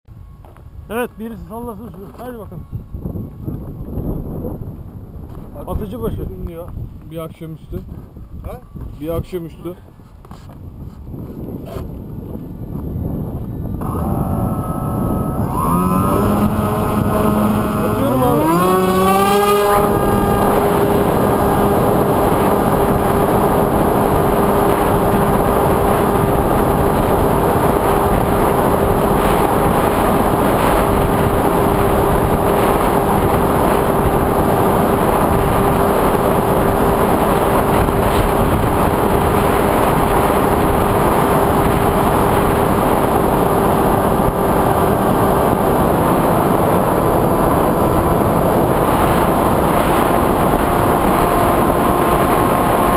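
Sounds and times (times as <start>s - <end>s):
propeller and wind noise: 0.1s - 52.9s
quadcopter motors whining: 12.5s - 40.8s.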